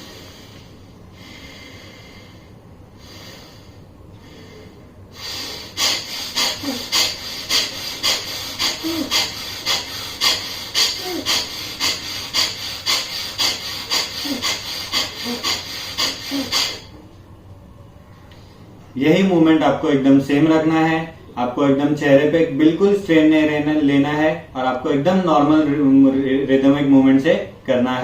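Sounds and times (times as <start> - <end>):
forceful breathing through nose: 0.0 - 17.0.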